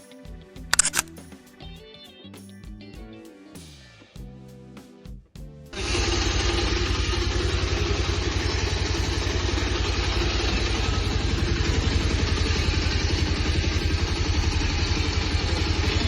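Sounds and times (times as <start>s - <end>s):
motorcycle engine idling: 5.8s - 16.0s.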